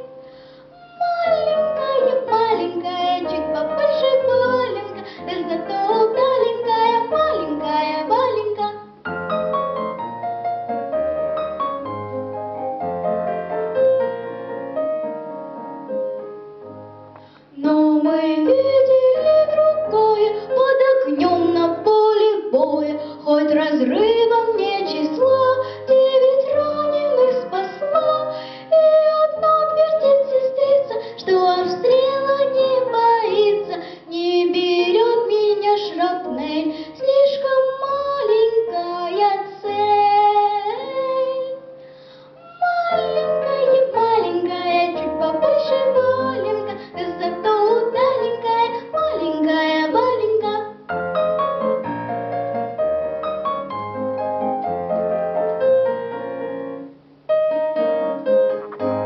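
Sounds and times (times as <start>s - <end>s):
instrumental backing track: 0.0s - 59.0s
girl singing: 0.8s - 9.0s, 17.6s - 41.6s, 42.4s - 50.9s.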